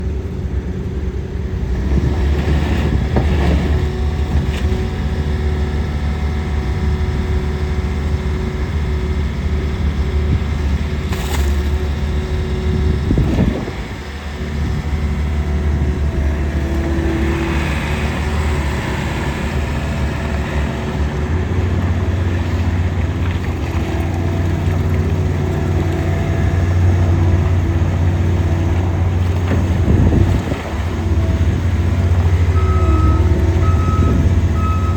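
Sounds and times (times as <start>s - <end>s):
diesel engine running: 0.0s - 34.9s.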